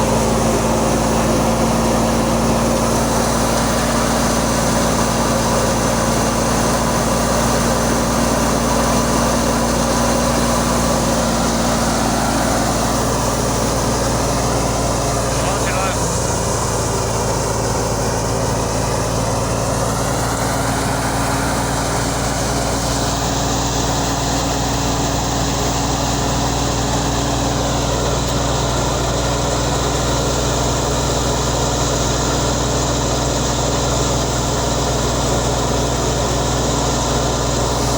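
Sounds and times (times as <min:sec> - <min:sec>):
harvester engine drone: 0:00.0 - 0:37.9.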